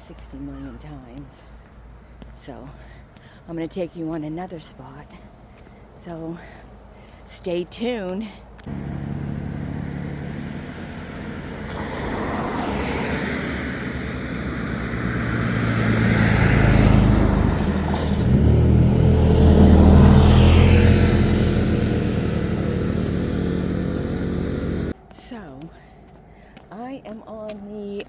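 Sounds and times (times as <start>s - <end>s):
vehicles passing on a road: 8.4s - 25.0s.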